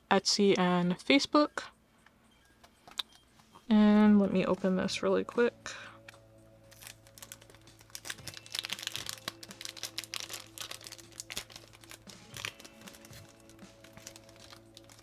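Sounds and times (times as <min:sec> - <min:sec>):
soft background music: 0:00.0 - 0:15.0
packaging crinkling and tearing: 0:06.7 - 0:15.0.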